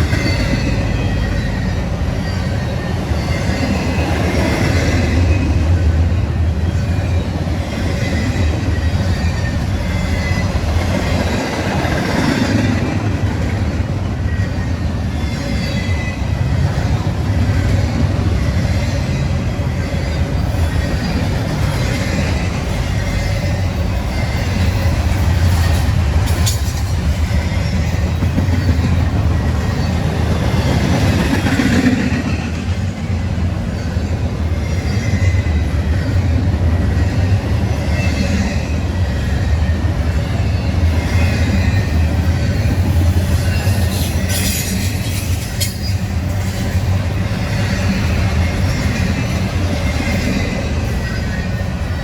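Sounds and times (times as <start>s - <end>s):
freight train rumble: 0.0s - 52.0s
wheels clattering over rail joints: 24.3s - 32.1s.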